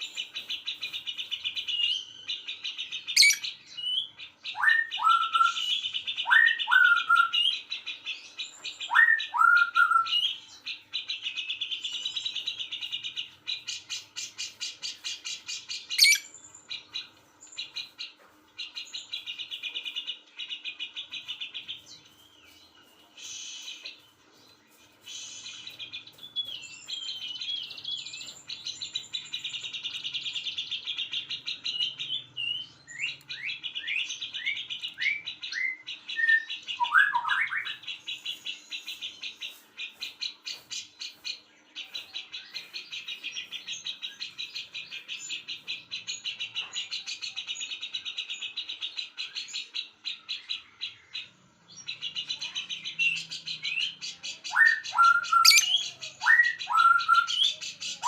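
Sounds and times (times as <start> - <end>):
songbirds trilling: 0.0 - 58.0
downward-slurred bird whistles: 54.5 - 58.0.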